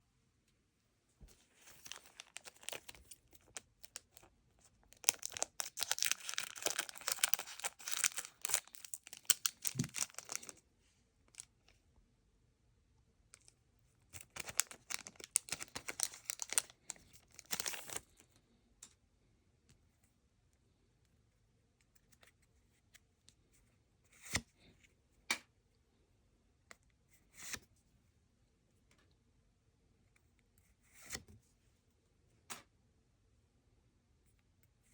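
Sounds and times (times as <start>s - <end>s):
foil wrappers tearing and crinkling: 1.7s - 4.3s, 4.9s - 10.6s, 14.2s - 18.0s.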